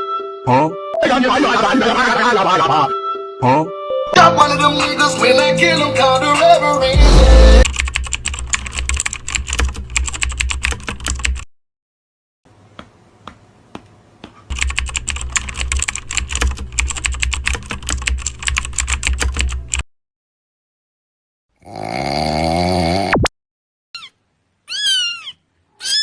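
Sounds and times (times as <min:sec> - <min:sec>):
rapid keyboard typing: 0:07.6 - 0:11.5, 0:14.5 - 0:19.8.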